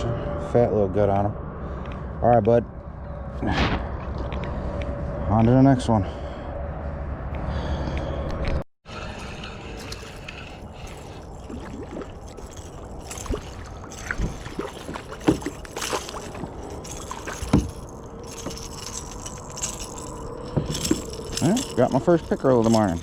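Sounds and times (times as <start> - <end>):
water splashing against kayak: 9.6 - 17.8.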